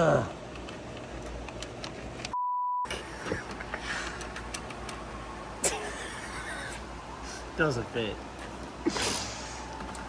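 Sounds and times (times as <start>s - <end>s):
low shop hum: 0.0s - 10.0s
censor bleep: 2.4s - 2.9s.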